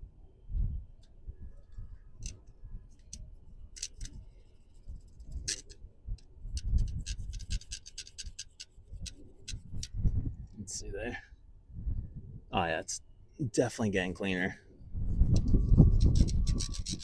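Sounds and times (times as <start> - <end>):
brush scrubbing metal chain: 6.5 - 9.9, 15.2 - 17.0.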